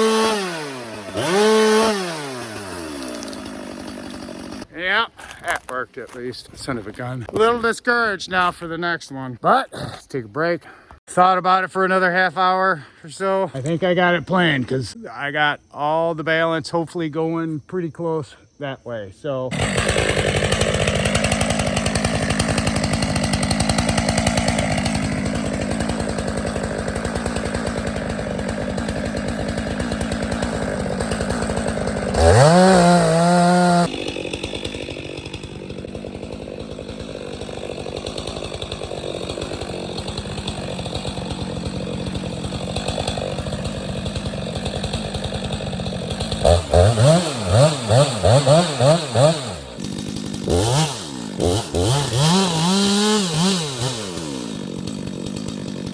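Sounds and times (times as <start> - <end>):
chainsaw running and revving: 0.0 - 4.7, 19.5 - 55.9.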